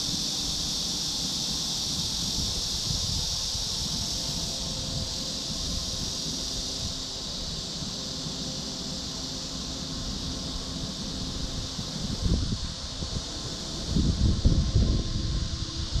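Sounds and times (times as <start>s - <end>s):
high-pitched hiss: 0.0s - 16.0s
wind rumble on microphone: 1.4s - 7.5s, 11.3s - 16.0s.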